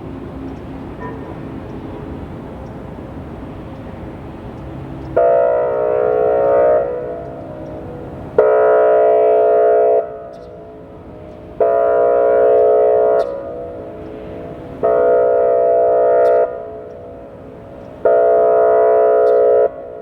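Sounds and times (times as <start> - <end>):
warning siren horn blasts: 5.1 - 20.0.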